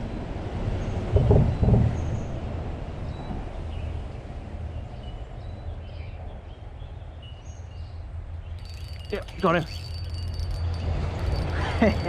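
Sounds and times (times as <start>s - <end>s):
distant road traffic rumble: 8.3s - 12.0s
high bird chirps: 8.6s - 11.6s.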